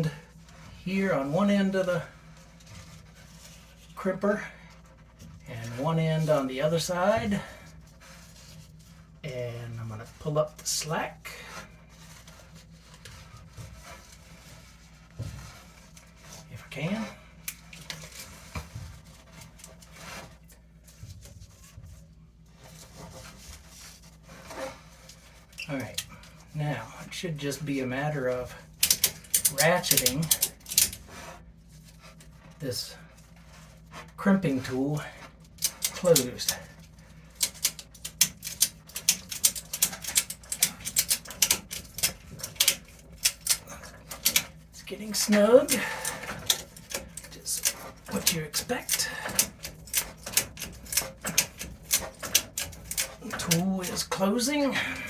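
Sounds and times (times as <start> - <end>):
strap webbing rubbing: 0.0 - 27.1
ratchet strap clicking: 37.4 - 44.5, 46.1 - 53.5.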